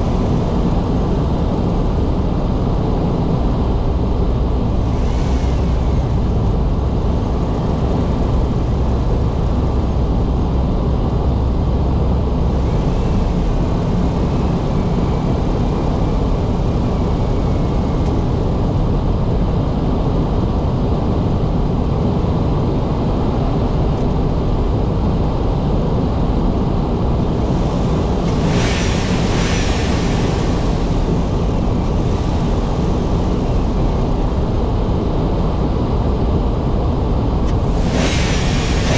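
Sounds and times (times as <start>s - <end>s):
car tyres and engine rumble: 0.0s - 38.9s
brief hiss: 27.4s - 34.4s, 37.5s - 38.9s.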